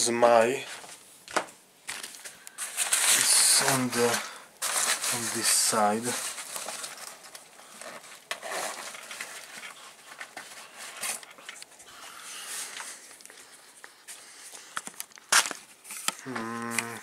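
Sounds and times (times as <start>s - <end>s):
rummaging through belongings: 0.8s - 16.3s
handling noises with light clicks: 6.0s - 11.9s.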